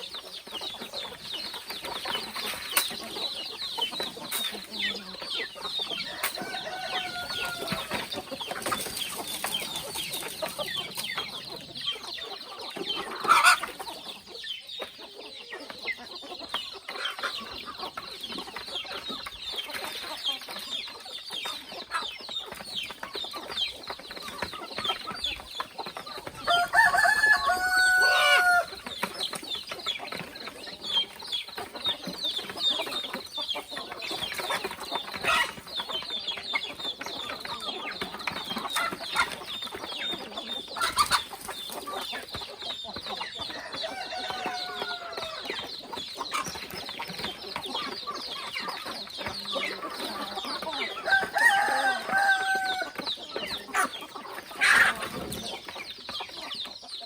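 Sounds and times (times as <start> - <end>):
chickens clucking: 0.0 - 57.0
rooster crowing: 6.0 - 7.9, 26.5 - 28.7, 43.5 - 45.4, 51.1 - 53.0.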